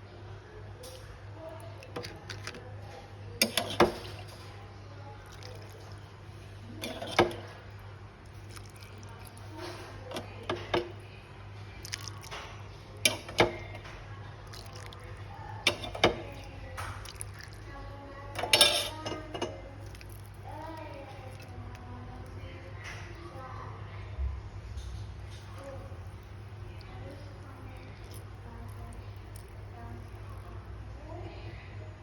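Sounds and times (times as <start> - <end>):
liquid sloshing and dripping: 5.2 - 11.0, 11.7 - 23.3.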